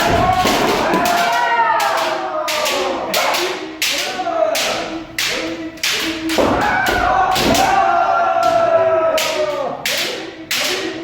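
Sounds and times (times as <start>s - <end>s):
bamboo swords striking: 0.0s - 7.9s
fencers shouting: 0.0s - 11.0s.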